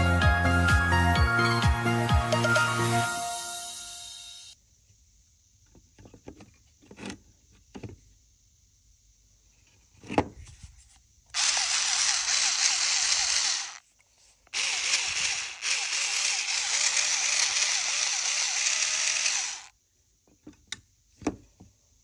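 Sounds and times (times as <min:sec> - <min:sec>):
mini drill motor running: 0:11.4 - 0:13.8, 0:14.5 - 0:19.7.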